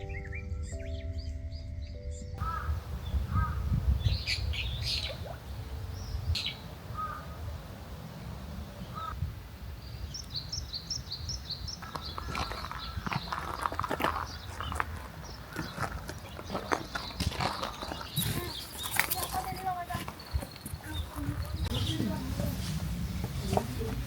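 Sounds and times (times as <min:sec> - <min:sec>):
steady low rumble: 0:00.0 - 0:10.0, 0:21.0 - 0:24.0
wild birds chirping: 0:00.0 - 0:24.0.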